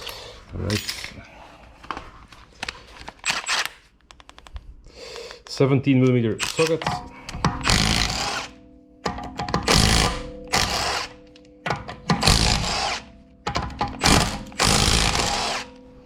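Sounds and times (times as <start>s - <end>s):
impact wrench hammering: 6.8s - 16.0s.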